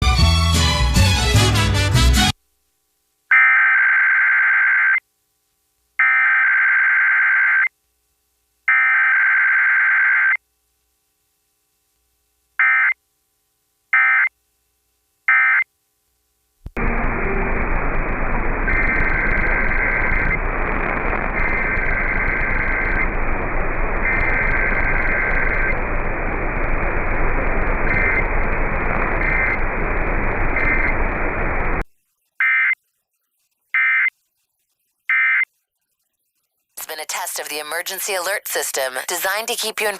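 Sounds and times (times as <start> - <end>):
harsh digital data bursts: 16.8 - 31.8
loud radio static: 16.8 - 31.8, 36.8 - 39.9.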